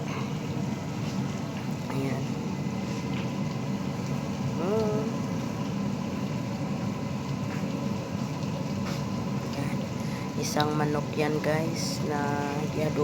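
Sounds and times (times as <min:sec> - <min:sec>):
machine humming: 0:00.0 - 0:07.4.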